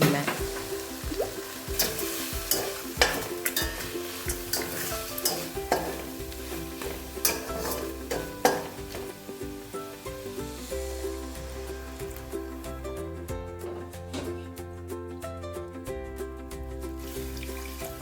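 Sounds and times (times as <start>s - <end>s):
sizzling hiss: 0.0s - 13.1s, 16.9s - 18.0s
ladle scraping and knocking pan: 0.3s - 9.2s, 13.6s - 14.5s.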